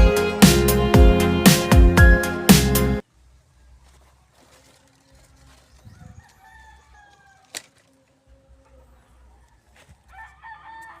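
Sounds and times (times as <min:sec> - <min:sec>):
rooster crowing: 0:05.8 - 0:11.0.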